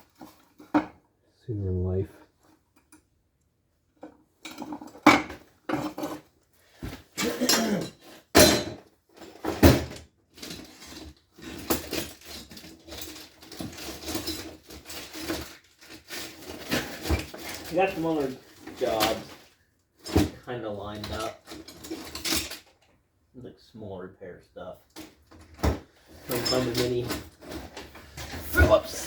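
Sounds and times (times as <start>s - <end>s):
metal tools clinking on workbench: 21.0s - 22.7s, 26.2s - 29.0s.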